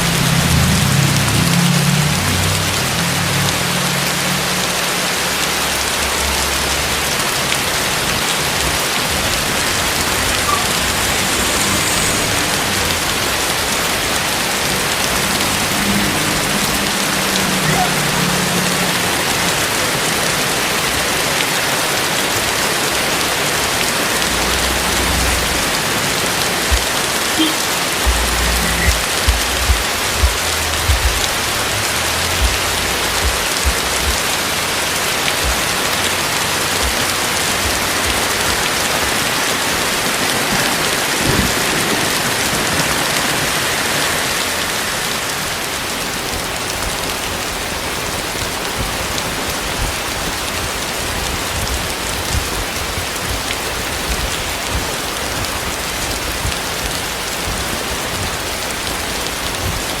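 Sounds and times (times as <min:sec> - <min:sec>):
heavy rain pouring: 0:00.0 - 1:00.0
low thumps: 0:28.0 - 0:34.8.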